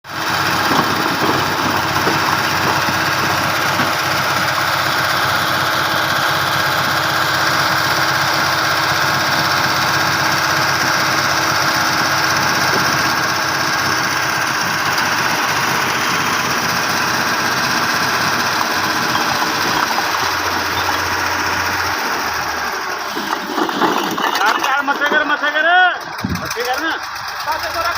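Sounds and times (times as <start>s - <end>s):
small engine running: 0.1s - 27.9s.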